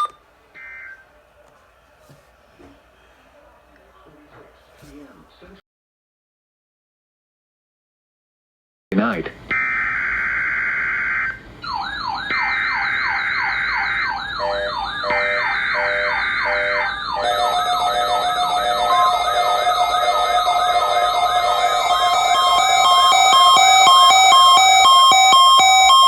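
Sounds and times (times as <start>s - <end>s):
beeping tones: 0.0s - 1.0s, 9.5s - 26.0s
siren sweeping up and down: 0.0s - 1.0s, 9.5s - 26.0s
steady alarm tone: 0.0s - 1.1s, 9.5s - 26.0s
fast-warbling high tone: 10.4s - 26.0s.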